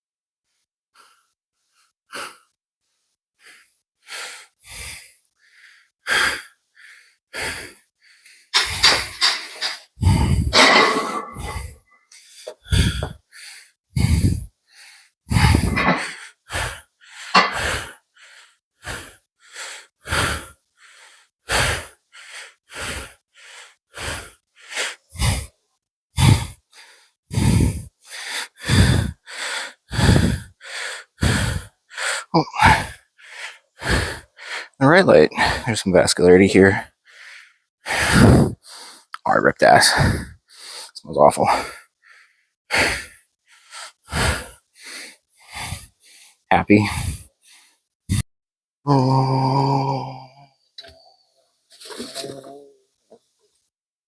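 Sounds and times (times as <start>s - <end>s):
man breathing hard: 3.4s - 25.6s, 26.2s - 35.7s, 36.7s - 39.2s, 39.8s - 48.2s.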